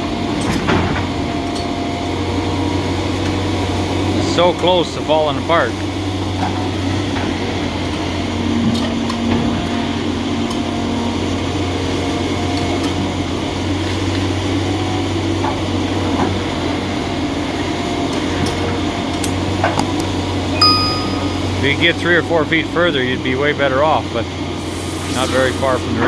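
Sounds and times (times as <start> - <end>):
diesel engine running: 21.4 - 24.6.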